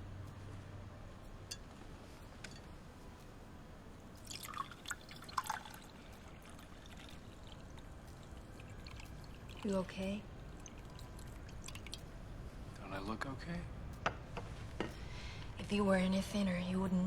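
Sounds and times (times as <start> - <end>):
liquid dripping and pouring: 4.2 - 12.2.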